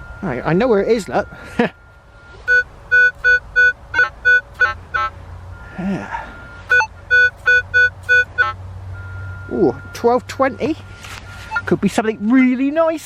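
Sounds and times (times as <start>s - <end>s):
metal detector beeps: 1.1s - 5.1s, 6.4s - 10.7s, 11.3s - 12.8s
metal detector steady tone: 2.2s - 5.1s, 6.4s - 12.8s.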